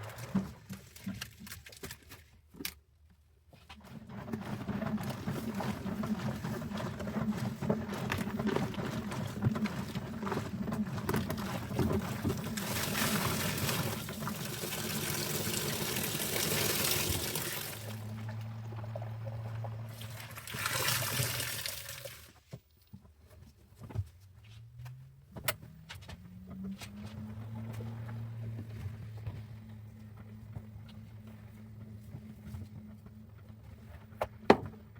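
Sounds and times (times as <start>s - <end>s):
liquid pouring and splashing: 8.1s - 22.4s.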